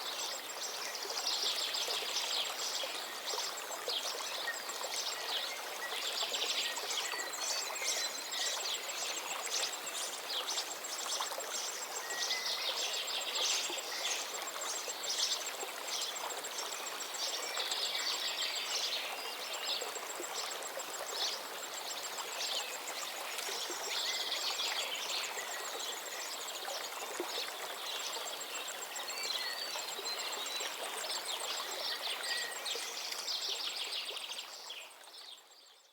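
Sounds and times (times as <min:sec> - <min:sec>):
stream water running: 0:00.0 - 0:35.9.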